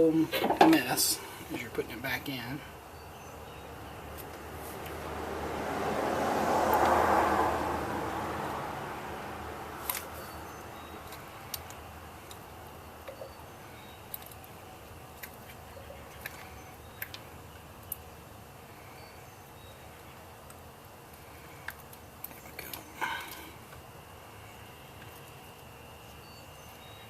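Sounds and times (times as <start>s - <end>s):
vehicle passing by: 3.5s - 11.4s.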